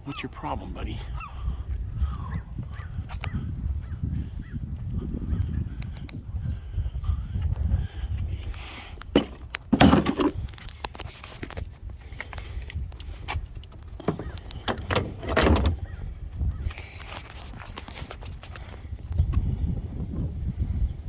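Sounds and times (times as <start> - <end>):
dull thumps: 9.2 - 10.4.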